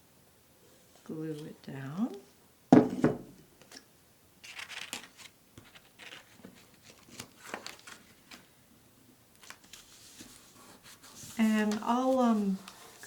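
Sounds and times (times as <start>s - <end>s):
cardstock rustling and scraping: 4.4s - 8.4s, 9.4s - 13.0s.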